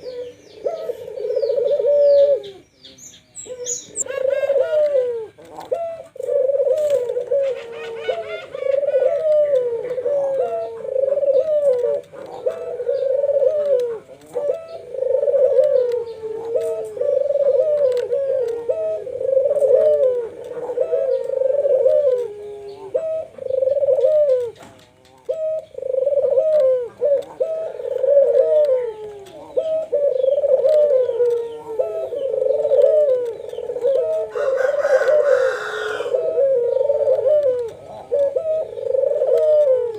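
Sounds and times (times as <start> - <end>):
doves cooing: 0.0 - 39.9.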